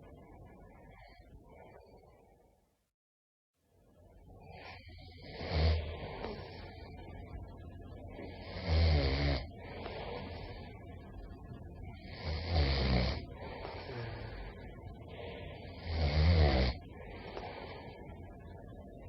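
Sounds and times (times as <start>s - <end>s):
person snoring: 4.5s - 6.7s, 8.3s - 10.6s, 12.0s - 14.6s, 15.2s - 17.9s.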